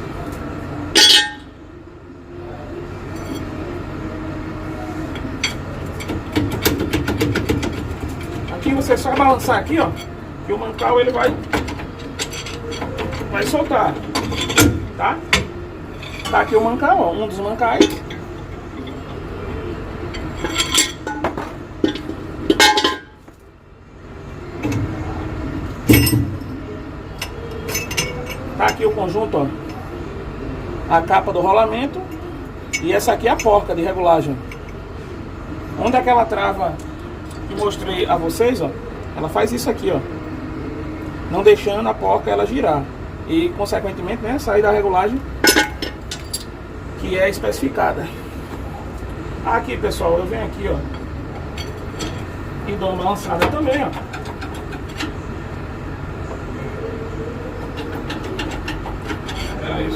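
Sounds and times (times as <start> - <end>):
steel parts clinking: 0.9 - 1.6, 3.1 - 3.6, 5.1 - 16.8, 17.7 - 19.3, 20.0 - 23.4, 25.8 - 26.5, 27.1 - 29.0, 34.4 - 34.8, 45.4 - 46.6, 50.9 - 52.6, 53.2 - 55.3, 57.5 - 59.9
loud metal clank: 1.0 - 1.5, 20.2 - 23.2, 25.9 - 26.5.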